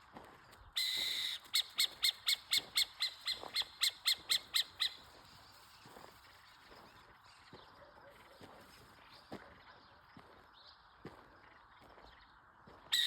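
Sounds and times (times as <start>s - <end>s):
owl rasping call: 0.8s - 5.1s.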